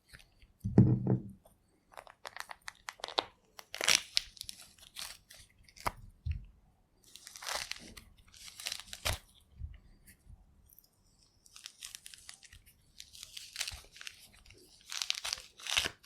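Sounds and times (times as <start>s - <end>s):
orange peel tearing: 11.6s - 16.0s.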